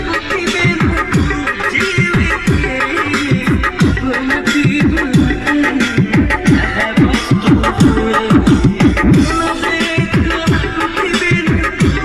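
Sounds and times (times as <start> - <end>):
loud music with fast beat: 0.0 - 12.0.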